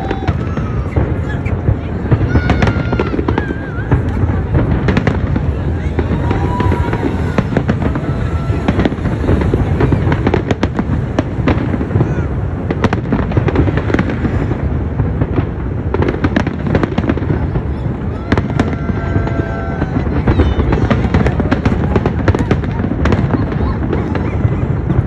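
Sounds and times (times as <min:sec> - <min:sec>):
fireworks bursting and crackling: 0:00.0 - 0:25.0.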